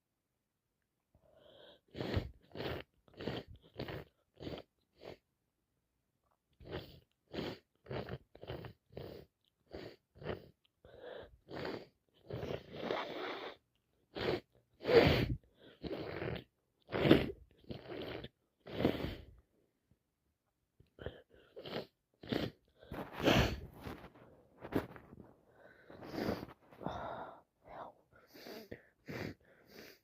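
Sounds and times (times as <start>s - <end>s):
person sniffing wetly: 1.4s - 5.2s, 11.0s - 13.6s, 21.5s - 24.9s, 25.6s - 27.3s, 28.2s - 30.0s.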